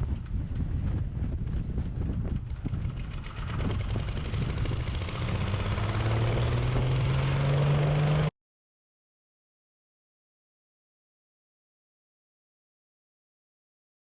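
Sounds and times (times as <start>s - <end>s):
wood chipper engine running: 2.5s - 8.3s.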